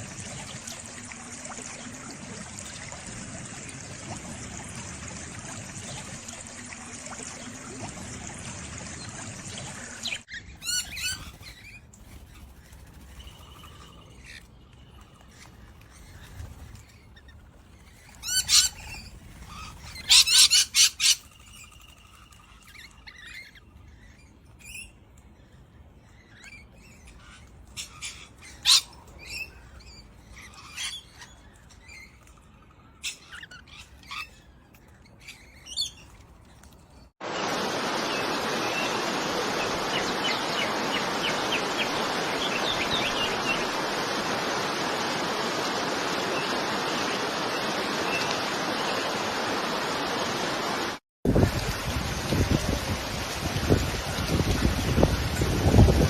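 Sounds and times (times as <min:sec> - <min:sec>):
rushing water: 0:00.0 - 0:11.3, 0:37.2 - 0:56.0
birds chirping: 0:08.8 - 0:49.6.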